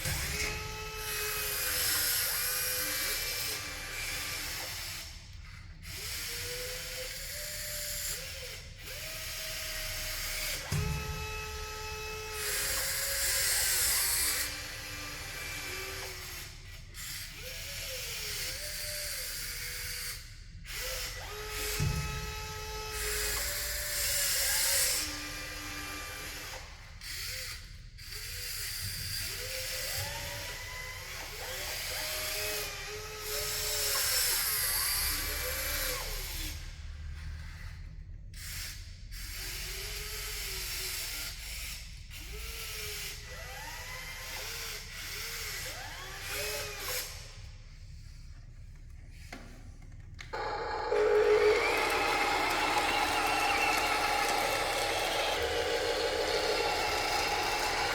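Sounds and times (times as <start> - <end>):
electric motors whining: 50.2 - 57.9.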